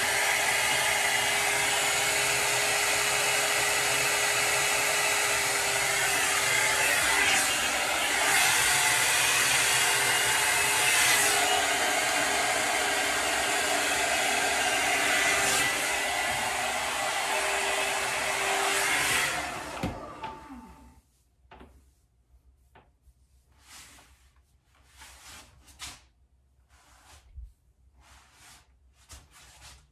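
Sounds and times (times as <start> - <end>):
electric motor blowing air: 0.0 - 20.9.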